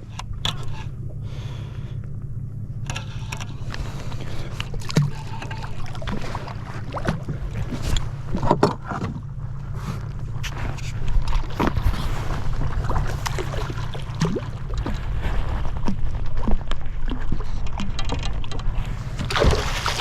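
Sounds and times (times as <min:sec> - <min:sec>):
boat motor running: 0:00.0 - 0:20.0
water sloshing: 0:03.0 - 0:20.0
small knocks and splashes: 0:04.4 - 0:09.3, 0:12.7 - 0:20.0.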